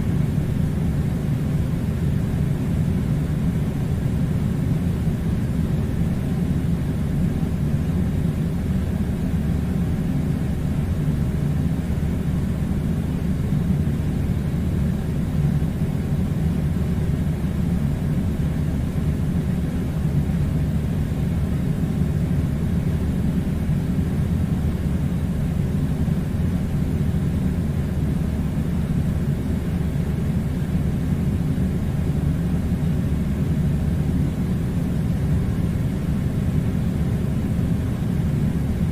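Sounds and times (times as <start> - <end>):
air conditioner humming: 0.0 - 38.9.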